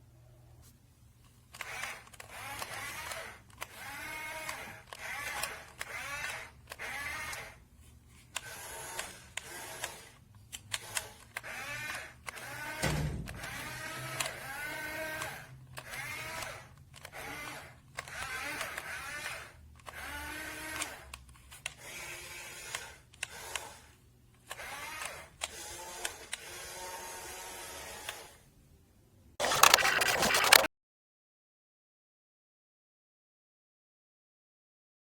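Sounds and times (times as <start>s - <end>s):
toy gear motors whirring: 1.5s - 7.6s, 8.2s - 28.4s, 29.4s - 30.7s
thump: 12.8s - 13.6s
clicks: 29.4s - 30.7s.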